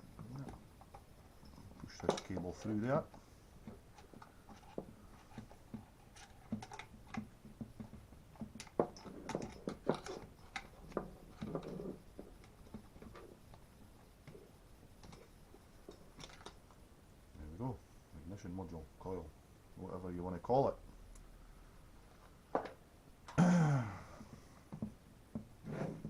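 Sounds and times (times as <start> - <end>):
plastic and metal parts clicking: 3.9 - 13.3.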